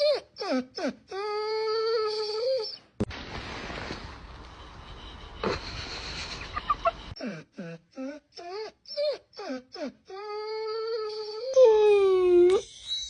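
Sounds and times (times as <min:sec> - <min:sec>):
dog whining: 0:00.0 - 0:02.8, 0:07.1 - 0:12.6.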